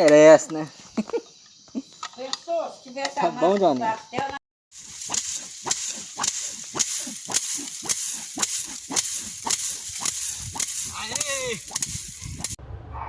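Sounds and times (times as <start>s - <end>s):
steady high hiss: 0.0s - 12.6s
stick whacking bean plants: 3.0s - 12.6s.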